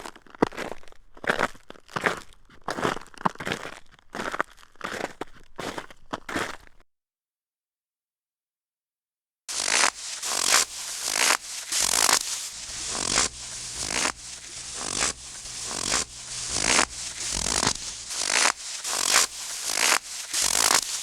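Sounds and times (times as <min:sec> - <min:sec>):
footsteps crunching through snow: 0:09.5 - 0:21.0.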